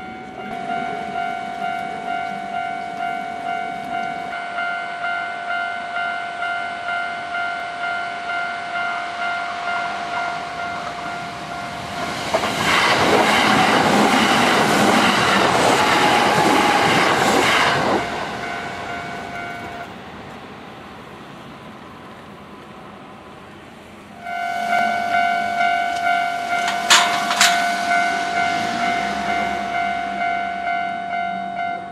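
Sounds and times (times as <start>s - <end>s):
level crossing bell ringing: 0.0s - 11.9s, 24.2s - 31.9s
electric train passing: 0.0s - 31.9s
wheels clattering over rail joints: 10.8s - 18.6s, 26.0s - 28.1s.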